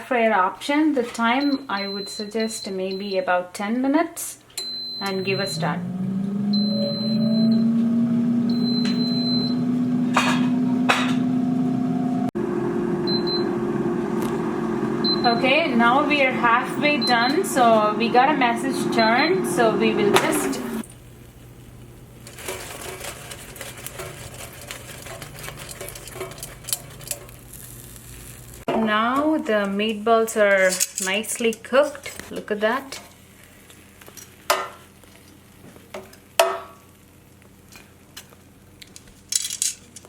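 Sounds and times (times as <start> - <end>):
air fryer fan humming: 4.6 - 30.4.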